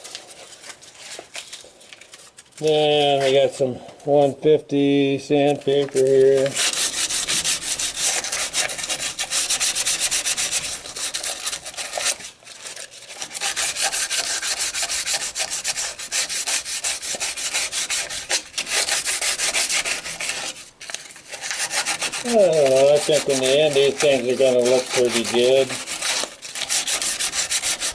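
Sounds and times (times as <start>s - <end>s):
sandpaper scratching on metal: 6.0s - 27.9s.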